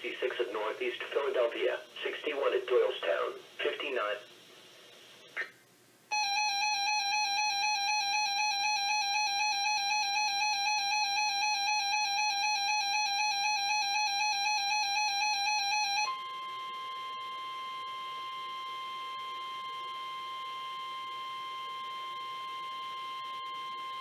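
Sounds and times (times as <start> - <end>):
electronic alarm warbling: 6.1 - 24.0
steady alarm tone: 6.1 - 24.0.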